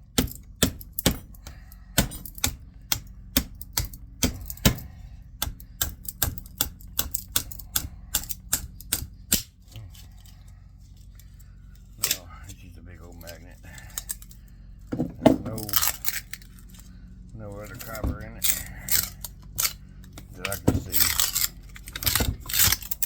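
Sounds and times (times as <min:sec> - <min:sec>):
tools tapping on metal: 0:00.0 - 0:10.4.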